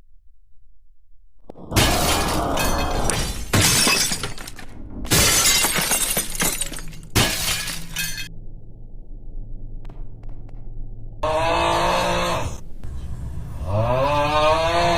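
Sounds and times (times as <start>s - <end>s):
low steady hum: 0.0s - 13.8s
loud crashing and shattering: 1.7s - 8.3s.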